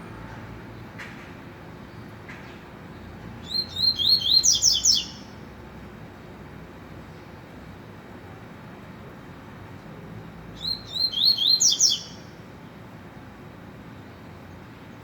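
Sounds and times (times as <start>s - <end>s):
bird singing rising chirps: 3.4s - 5.2s, 10.6s - 12.3s.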